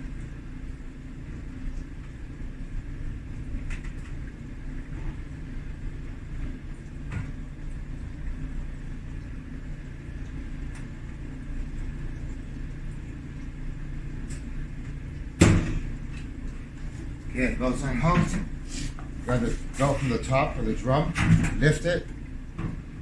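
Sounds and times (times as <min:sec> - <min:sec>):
steady low rumble: 0:07.4 - 0:23.0.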